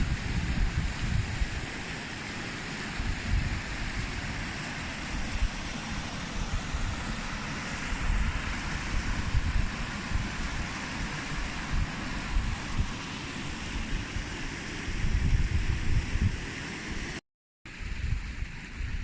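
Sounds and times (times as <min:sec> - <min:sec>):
wind buffeting microphone: 0:00.0 - 0:01.8, 0:03.0 - 0:13.0, 0:13.6 - 0:16.5.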